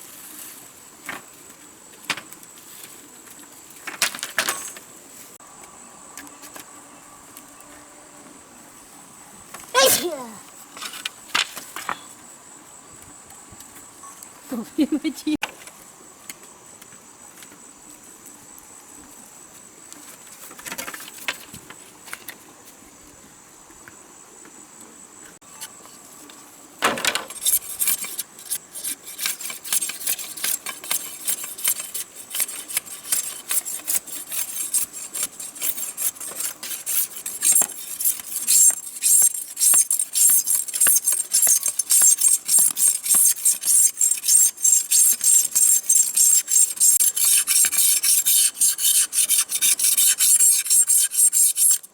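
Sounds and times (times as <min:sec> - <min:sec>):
hand tool rasping wood: 0:27.3 - 0:51.9.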